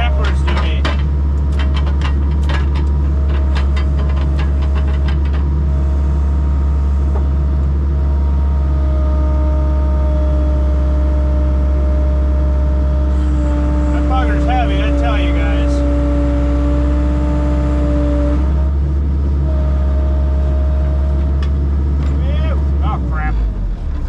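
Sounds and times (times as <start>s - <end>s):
steady whine: 0.0s - 15.8s
excavator diesel engine running: 0.0s - 24.0s.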